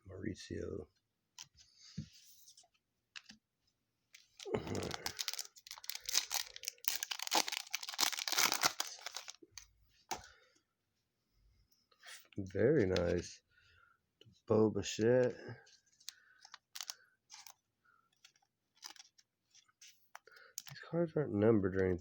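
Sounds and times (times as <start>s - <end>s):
foil wrapper crinkling and tearing: 4.2s - 9.6s, 16.0s - 17.6s, 18.2s - 19.7s.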